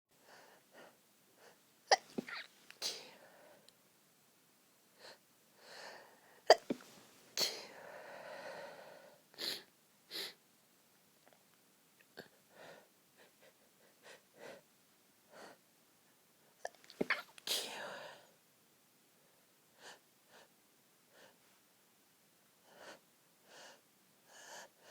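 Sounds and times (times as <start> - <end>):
woman's stifled sneezes: 1.9 - 3.2, 16.7 - 18.0.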